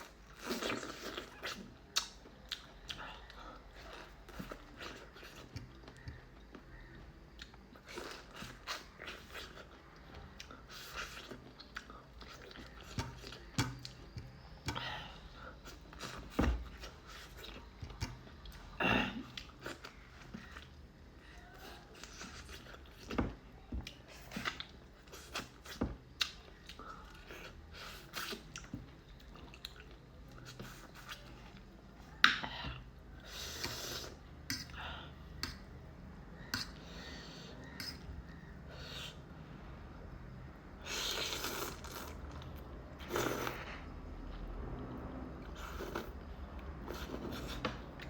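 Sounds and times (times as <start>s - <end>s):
person chewing noodles: 0.0s - 23.2s, 40.8s - 43.8s, 45.4s - 48.0s.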